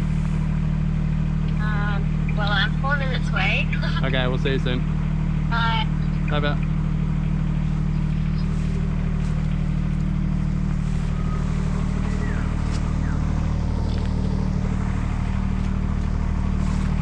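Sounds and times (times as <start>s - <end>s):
engine idling: 0.0s - 17.0s
faint high chirps: 10.8s - 13.5s.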